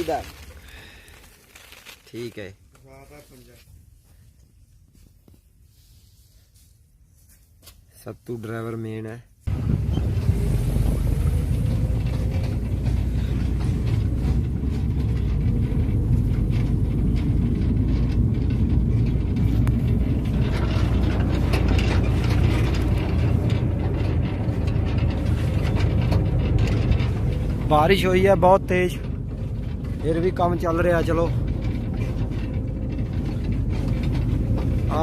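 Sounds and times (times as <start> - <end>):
farm machinery engine running: 9.5 - 35.0
machinery rattling and clatter: 9.5 - 35.0.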